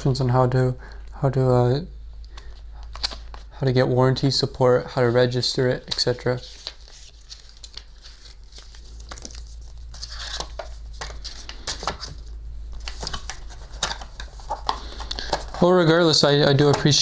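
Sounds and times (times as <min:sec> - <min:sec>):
steady low hum: 0:00.0 - 0:17.0
paper rustling: 0:05.0 - 0:17.0.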